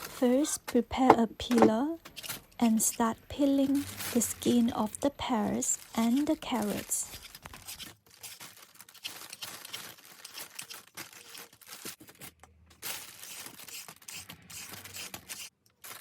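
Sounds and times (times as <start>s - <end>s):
vegetable peeler scraping: 7.1s - 11.5s, 12.9s - 16.0s.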